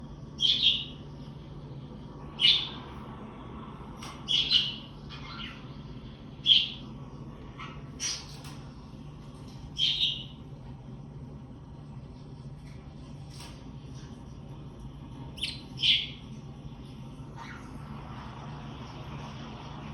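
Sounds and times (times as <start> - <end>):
steady low hum: 0.0 - 19.9
parakeet chirping: 0.4 - 1.0, 2.4 - 2.9, 4.2 - 6.9, 7.6 - 8.4, 9.7 - 10.5, 15.3 - 16.3, 17.3 - 17.8.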